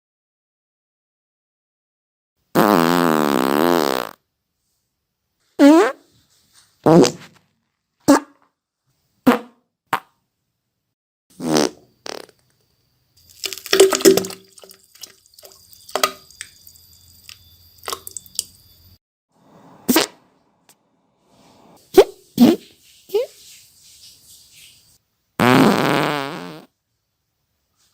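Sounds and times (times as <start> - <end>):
farts: 2.5 - 4.2, 5.6 - 6.1, 6.8 - 7.4, 11.3 - 12.5, 19.9 - 20.2, 25.4 - 26.7.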